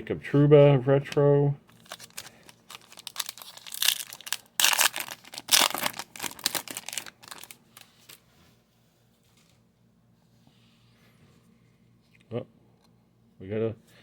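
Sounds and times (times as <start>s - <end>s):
foil wrapper crinkling and tearing: 1.7s - 8.2s.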